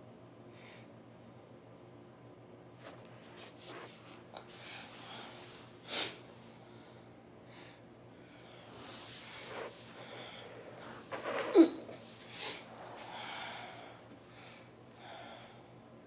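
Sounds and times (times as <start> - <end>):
person sniffing: 8.8 - 13.8.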